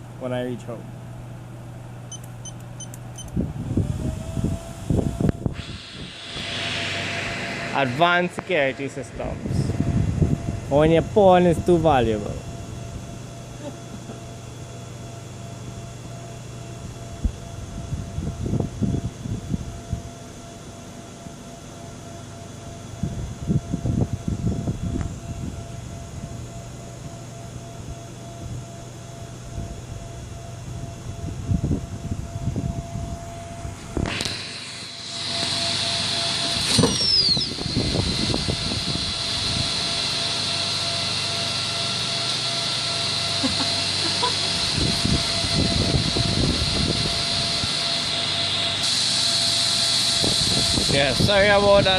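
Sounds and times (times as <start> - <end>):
low electrical hum: 0.0 - 48.8
computer fans whirring: 0.0 - 51.9
brief falling whistle: 34.1 - 40.0.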